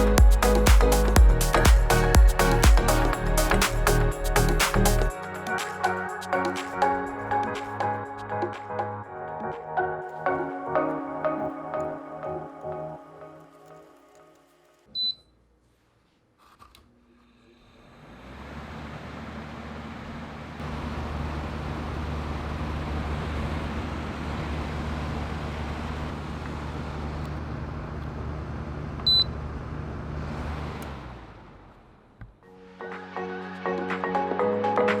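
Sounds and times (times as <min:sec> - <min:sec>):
low motor hum: 0:00.0 - 0:05.1, 0:17.5 - 0:32.4
control panel beep: 0:15.0 - 0:15.2.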